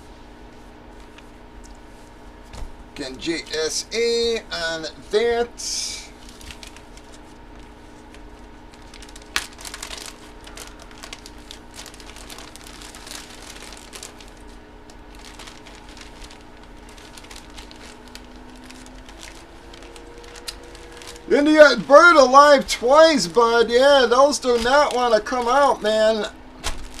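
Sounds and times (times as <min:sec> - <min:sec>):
plastic crinkling and rustling: 0:06.1 - 0:27.0.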